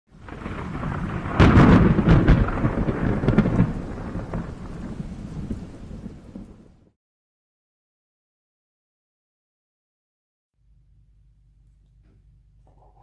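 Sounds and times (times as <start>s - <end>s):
thunder rumble and crackles: 0.1s - 6.9s.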